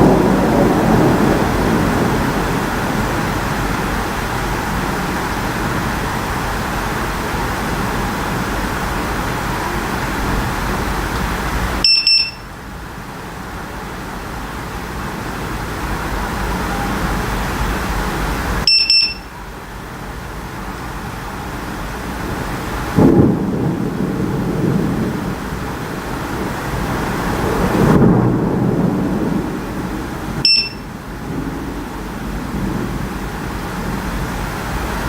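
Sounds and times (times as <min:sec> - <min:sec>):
low rumble of thunder: 0:00.0 - 0:11.9, 0:19.4 - 0:35.0
heavy rain: 0:00.0 - 0:35.0
high electronic beeps: 0:11.8 - 0:12.4, 0:18.7 - 0:19.3, 0:30.4 - 0:30.8.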